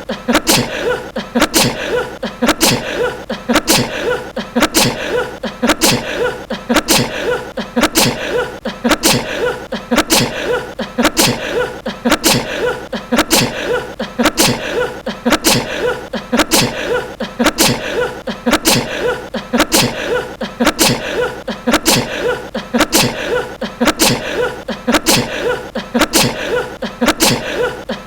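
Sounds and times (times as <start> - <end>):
man sneezing: 0.0 - 28.0.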